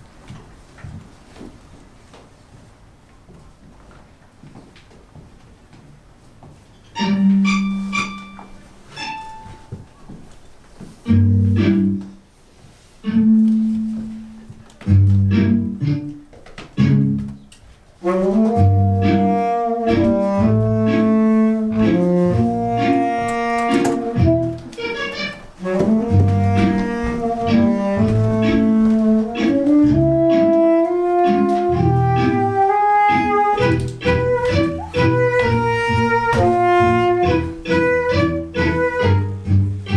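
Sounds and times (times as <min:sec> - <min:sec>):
instrumental score music: 0:06.9 - 0:09.9, 0:10.9 - 0:12.2, 0:13.0 - 0:39.9.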